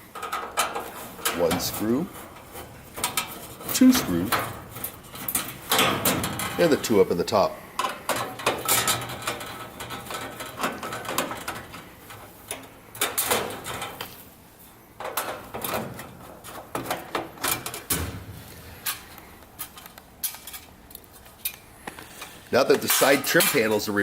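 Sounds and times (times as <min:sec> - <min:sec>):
sheet-metal panels clattering: 0:00.0 - 0:21.5, 0:22.1 - 0:24.0.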